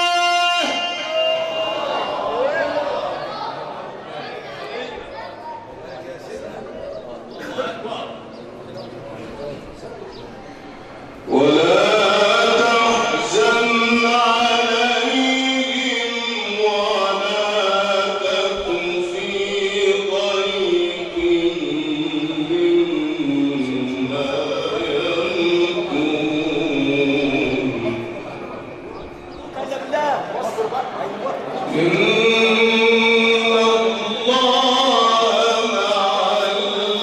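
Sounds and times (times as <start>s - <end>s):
man chanting melodically: 0.0s - 2.8s, 11.2s - 37.0s.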